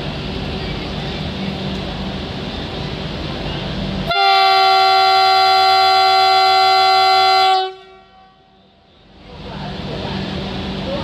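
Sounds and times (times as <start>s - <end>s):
train horn blast: 4.1s - 8.6s.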